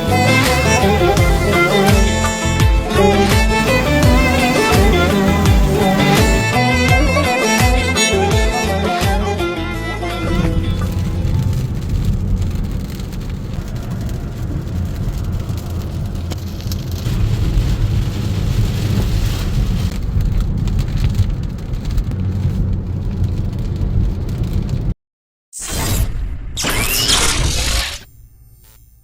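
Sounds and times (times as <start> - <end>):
heavy rain falling: 0.0 - 6.9, 10.2 - 24.9.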